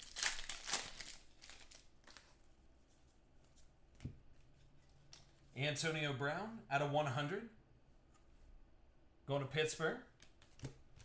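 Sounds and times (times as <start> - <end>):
card pack wrappers crinkling: 0.0 - 2.4.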